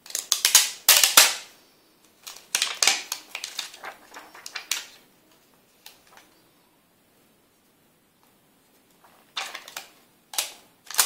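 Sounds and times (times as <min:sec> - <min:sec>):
plastic film peeling crackles: 0:00.0 - 0:01.4, 0:02.2 - 0:05.0, 0:08.9 - 0:11.0.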